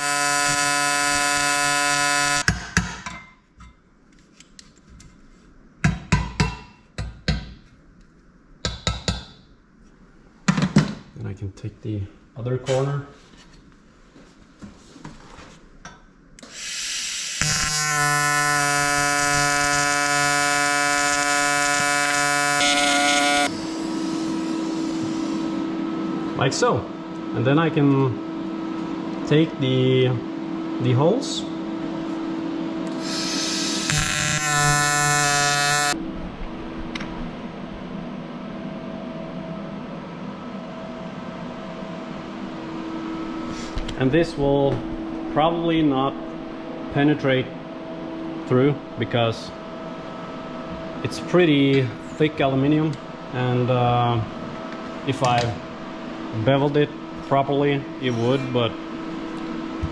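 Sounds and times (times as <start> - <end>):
welding arc buzzing: 0.0 - 2.5, 16.4 - 25.6, 32.9 - 36.0
steady low hum: 15.6 - 59.9
gas hiss: 16.4 - 18.3, 23.3 - 25.6, 32.9 - 34.4.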